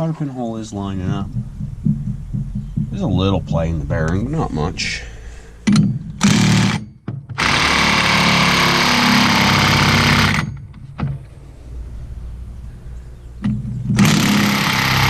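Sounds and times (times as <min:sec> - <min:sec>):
impact wrench hammering: 0:05.6 - 0:10.8, 0:13.4 - 0:15.0.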